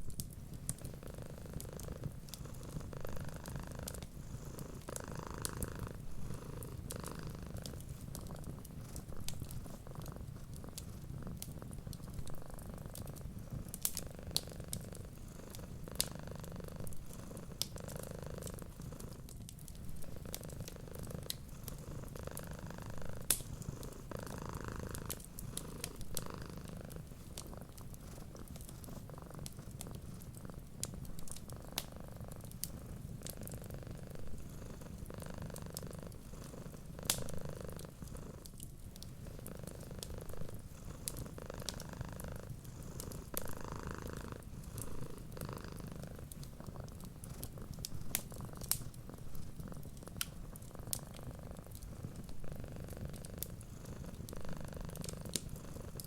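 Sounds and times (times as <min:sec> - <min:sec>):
cat purring: 0:00.0 - 0:56.0
wood fire crackling: 0:00.0 - 0:56.0.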